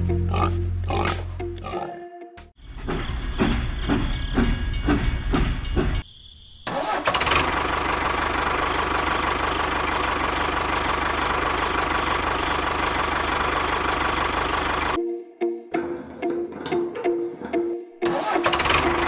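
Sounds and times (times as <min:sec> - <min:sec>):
engine running with knocking: 0:07.2 - 0:15.0.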